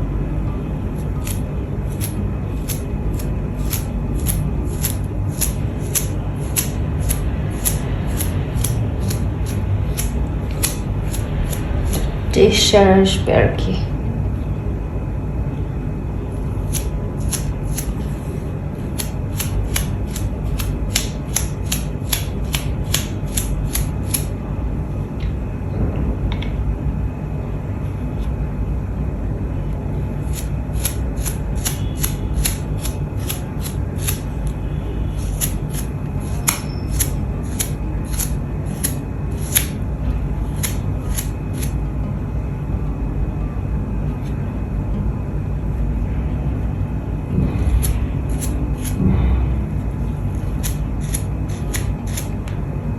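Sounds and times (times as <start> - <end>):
steady low hum: 0.0 - 52.9
paintbrush bristles flicking: 1.0 - 12.2.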